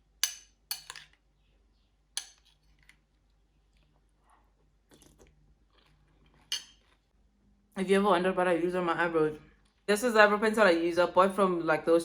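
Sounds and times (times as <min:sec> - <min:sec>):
clicks and clinks of small objects: 0:00.2 - 0:01.2, 0:02.2 - 0:03.0.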